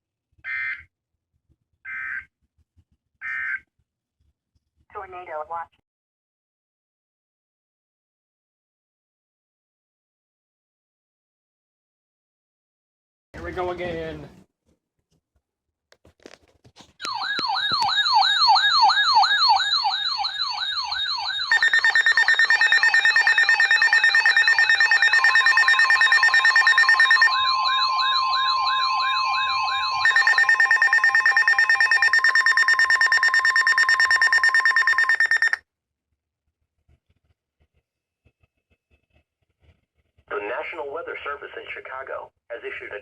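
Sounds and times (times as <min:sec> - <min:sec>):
siren-like alert warble: 0:19.0 - 0:35.6
rapidly pulsing beeps: 0:21.4 - 0:27.3, 0:30.0 - 0:35.6.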